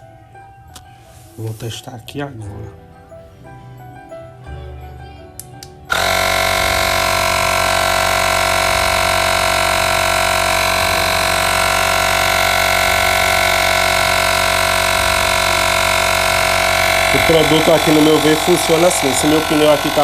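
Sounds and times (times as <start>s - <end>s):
air compressor buzzing hum: 5.9s - 20.0s.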